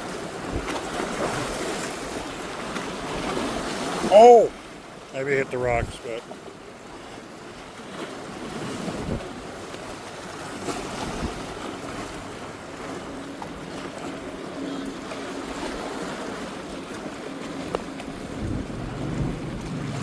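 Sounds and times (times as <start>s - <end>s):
sea waves washing against rocks: 0.0s - 20.0s
wind buffeting microphone: 8.5s - 9.5s, 17.6s - 20.0s.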